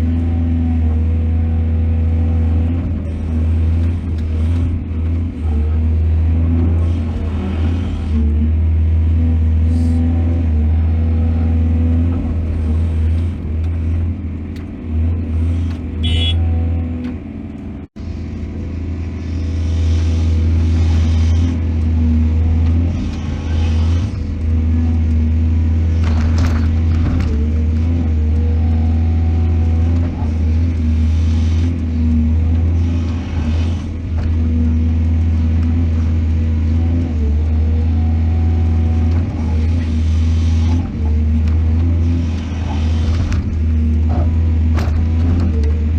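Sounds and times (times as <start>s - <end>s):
heavy diesel engines rumbling: 0.0s - 45.9s.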